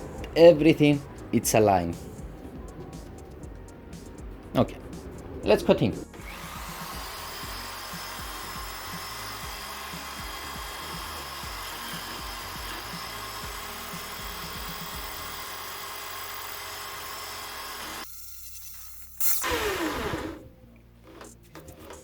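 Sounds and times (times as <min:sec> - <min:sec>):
wood lathe running: 0:05.5 - 0:18.1, 0:19.4 - 0:20.5.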